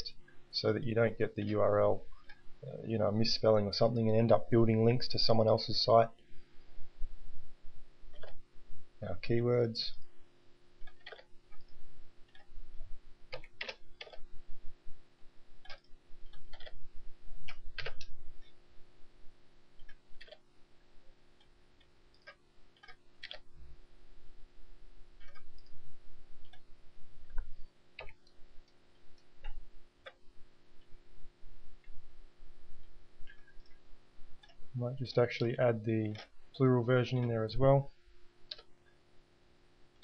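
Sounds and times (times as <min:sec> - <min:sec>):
mouse clicks: 0:17.4 - 0:18.6, 0:38.5 - 0:38.7
keyboard keystrokes: 0:17.5 - 0:18.1.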